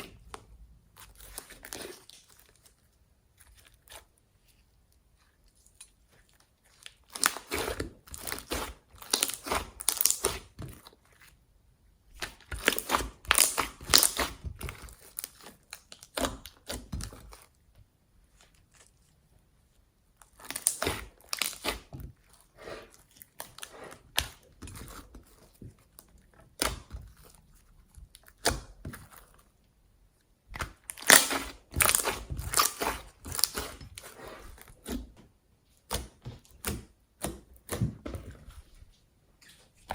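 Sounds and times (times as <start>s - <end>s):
slime crackling when kneaded: 6.7s - 10.6s, 12.2s - 17.5s, 30.5s - 34.2s.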